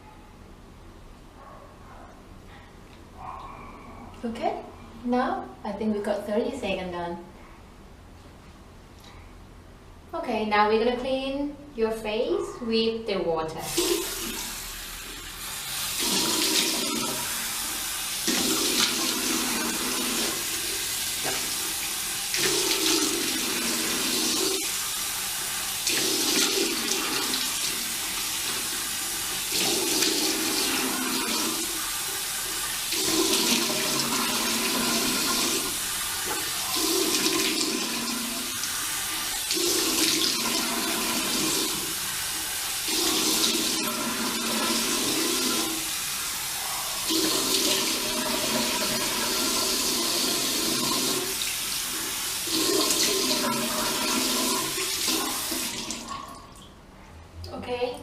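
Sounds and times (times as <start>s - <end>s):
tap water running into sink: 13.7s - 46.4s, 47.0s - 56.4s.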